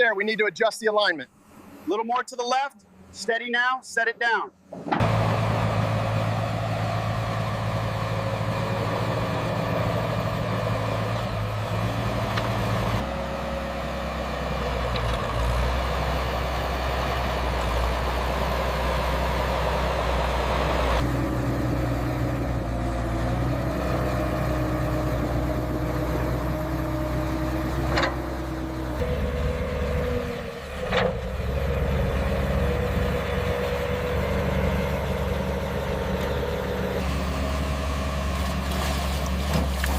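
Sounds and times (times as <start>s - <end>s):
heavy machinery diesel engines: 1.2s - 3.4s, 4.6s - 39.9s.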